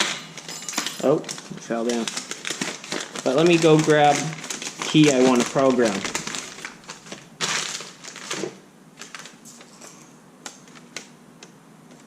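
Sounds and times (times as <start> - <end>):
keys rummaged clicking: 0.0 - 7.2.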